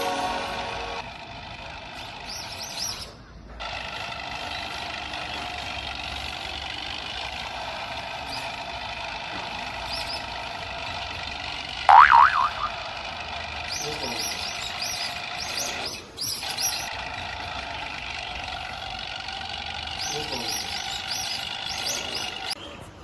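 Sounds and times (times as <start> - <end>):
music: 0.0 - 1.0
high bird chirps: 2.0 - 3.4, 11.9 - 12.8, 13.6 - 18.4, 19.9 - 22.8.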